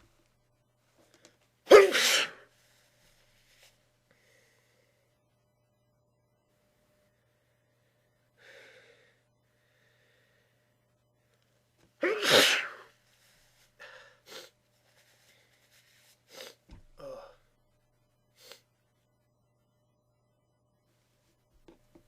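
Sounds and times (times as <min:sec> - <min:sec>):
person sneezing: 0:01.7 - 0:02.5, 0:12.0 - 0:12.9
breathy sniffs: 0:15.2 - 0:16.6, 0:18.4 - 0:18.7.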